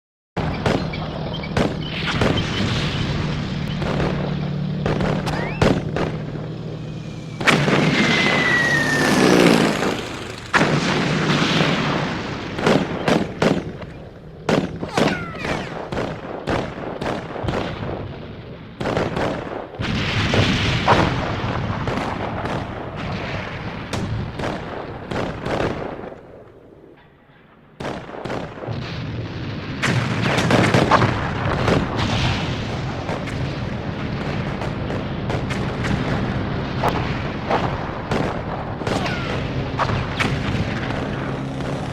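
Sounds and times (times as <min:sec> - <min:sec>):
gunfire bursts: 0:00.4 - 0:18.1, 0:18.8 - 0:26.4, 0:27.8 - 0:41.9
artillery booms: 0:00.4 - 0:41.9
falling whistle: 0:05.3 - 0:05.8, 0:06.8 - 0:09.6.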